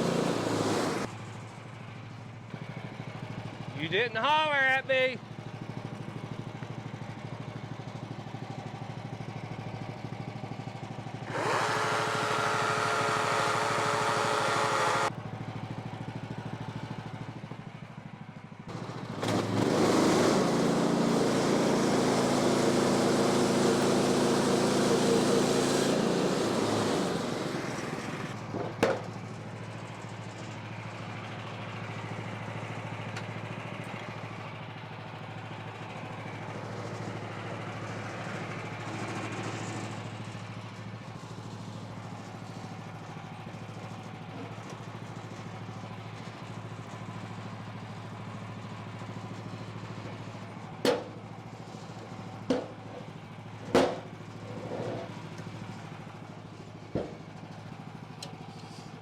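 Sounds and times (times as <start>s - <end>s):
engine whine: 0.0s - 1.4s, 11.2s - 15.4s, 18.7s - 31.2s
gas engine idling and revving: 0.0s - 59.0s.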